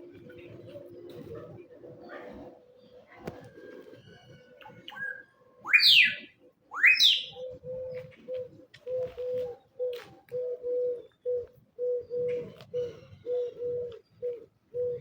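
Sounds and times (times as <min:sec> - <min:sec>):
low cooing bird notes: 0:00.0 - 0:15.0
loud rising bird calls: 0:05.7 - 0:07.4.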